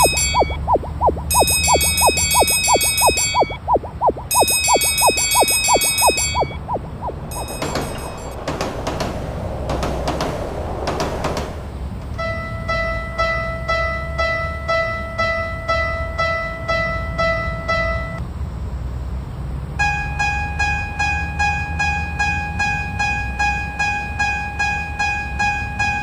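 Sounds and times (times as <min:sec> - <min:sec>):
level crossing bell ringing: 0:00.0 - 0:00.7, 0:01.3 - 0:03.7, 0:04.3 - 0:06.6, 0:07.2 - 0:08.4
higher-pitched crossing bell: 0:00.0 - 0:03.7, 0:04.3 - 0:08.4
low rumble: 0:00.0 - 0:04.7, 0:06.2 - 0:12.2.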